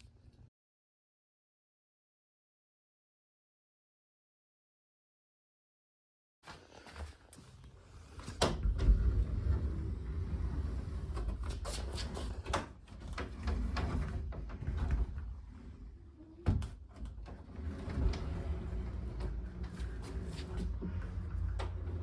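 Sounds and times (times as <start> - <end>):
sliding door rolling rumble: 7.8 - 11.6, 12.2 - 16.4, 17.1 - 22.0.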